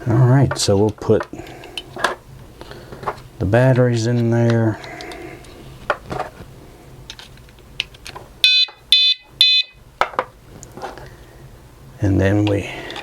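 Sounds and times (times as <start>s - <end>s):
high-pitched alarm beeps: 8.4s - 9.8s.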